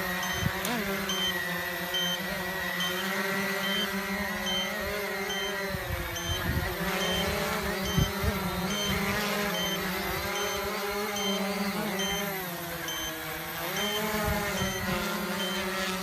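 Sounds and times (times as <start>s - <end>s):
quadcopter buzzing drone: 0.0s - 16.0s
short high beep: 7.0s - 8.1s, 12.0s - 13.2s.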